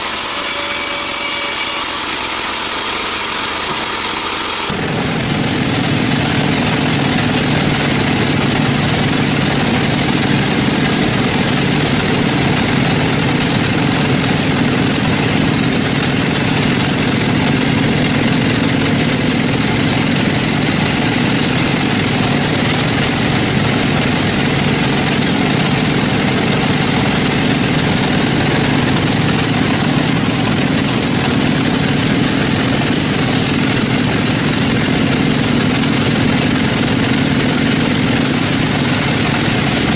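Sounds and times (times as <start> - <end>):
faint high whine: 0.0 - 4.7
sawmill machinery droning: 0.0 - 39.9.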